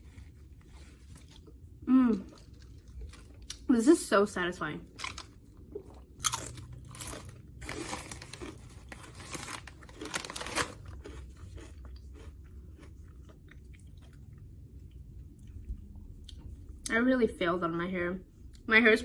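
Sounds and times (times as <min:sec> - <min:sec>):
chewing and mouth sounds: 0:04.9 - 0:09.0, 0:10.8 - 0:16.9
crisp crunching bites: 0:05.0 - 0:12.9.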